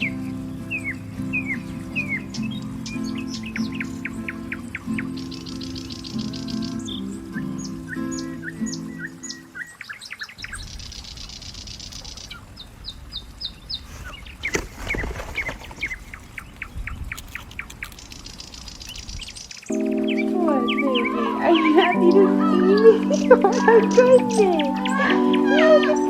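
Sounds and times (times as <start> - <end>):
small birds chirping: 0.0 - 26.0.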